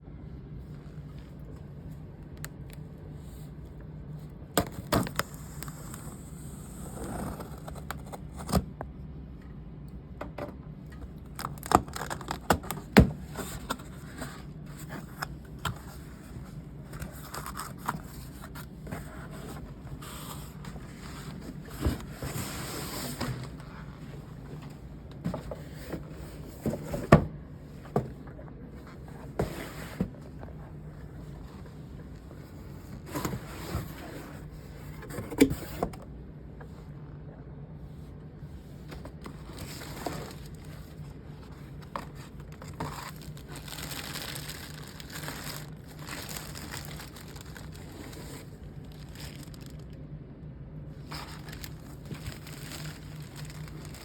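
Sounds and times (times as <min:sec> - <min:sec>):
low steady hum: 0:00.0 - 0:54.0
box being handled and opened: 0:11.0 - 0:36.0, 0:38.8 - 0:49.8, 0:51.0 - 0:54.0
packing rustling: 0:39.2 - 0:50.0, 0:51.0 - 0:54.0.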